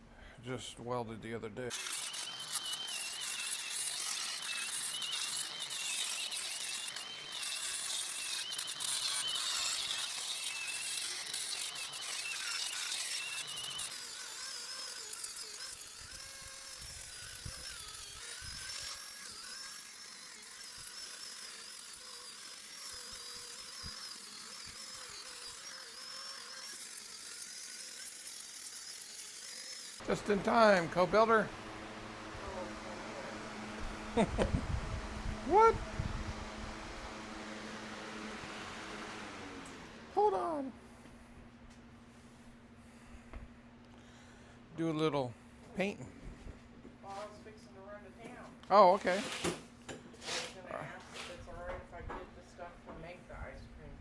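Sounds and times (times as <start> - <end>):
power tool whining against metal: 1.7 - 41.0.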